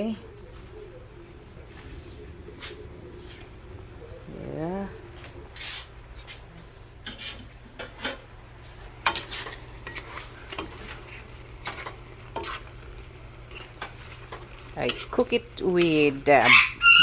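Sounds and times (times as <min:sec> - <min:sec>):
low hum: 0:00.0 - 0:07.0
utensils and dishes clattering: 0:07.0 - 0:08.3, 0:09.0 - 0:17.0.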